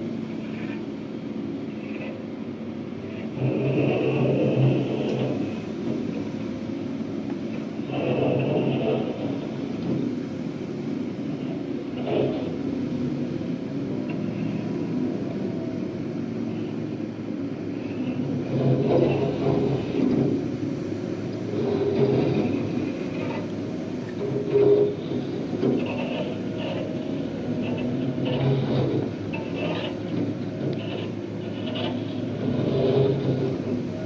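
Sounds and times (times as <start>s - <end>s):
diesel engine rumble: 0.0s - 34.0s
machinery knocks and scrapes: 21.5s - 34.0s.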